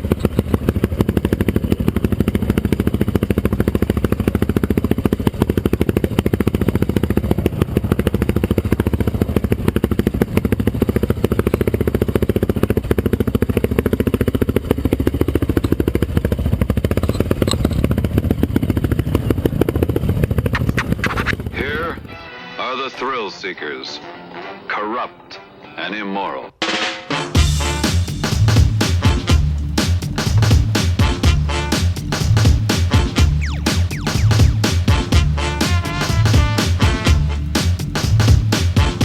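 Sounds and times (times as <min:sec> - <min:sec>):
motorcycle engine running: 0:00.0 - 0:22.2, 0:27.4 - 0:39.0.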